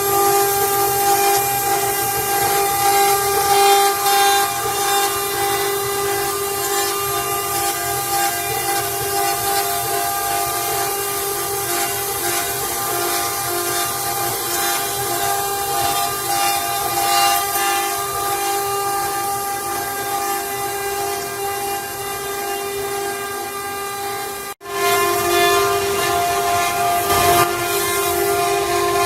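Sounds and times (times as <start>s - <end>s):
cnc wood router spindle whine: 0.0s - 29.0s.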